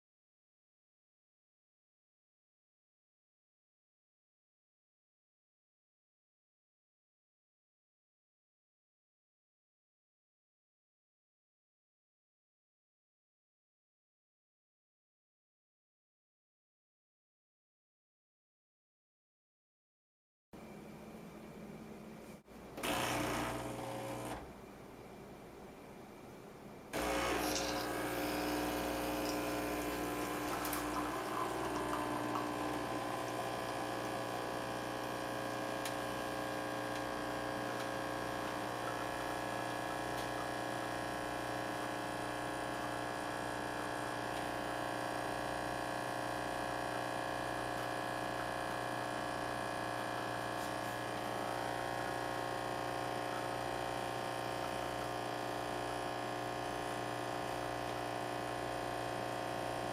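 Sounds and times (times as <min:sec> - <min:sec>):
espresso machine pump buzzing: 0:22.8 - 0:24.5, 0:27.0 - 0:59.9.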